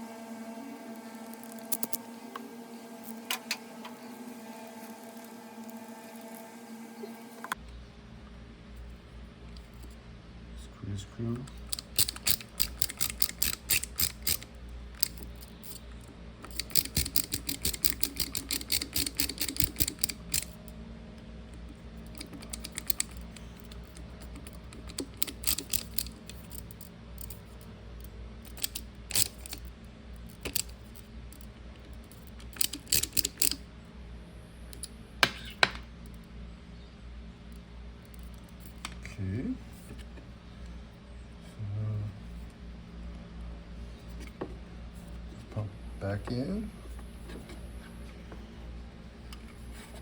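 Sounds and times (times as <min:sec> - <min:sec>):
steady low hum: 0:00.0 - 0:50.0
screwdriver clicking driving screws: 0:01.4 - 0:02.0, 0:11.6 - 0:15.8, 0:16.4 - 0:20.6, 0:22.1 - 0:27.3, 0:28.4 - 0:29.7, 0:30.3 - 0:31.0, 0:32.1 - 0:33.6.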